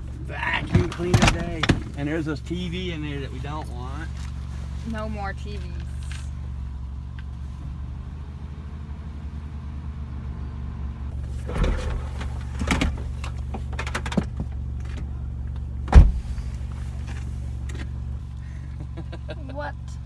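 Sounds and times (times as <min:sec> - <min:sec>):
vehicle engine idling: 0:00.0 - 0:20.0
knocks and clunks: 0:00.5 - 0:02.1, 0:11.1 - 0:18.0
loud thump: 0:11.4 - 0:13.0, 0:15.9 - 0:16.4.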